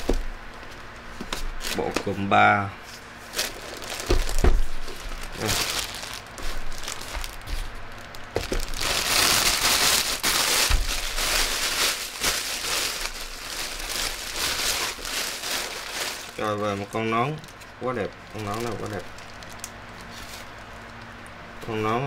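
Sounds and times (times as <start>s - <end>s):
packaging crinkling and rustling: 0.0s - 2.3s, 3.0s - 21.2s.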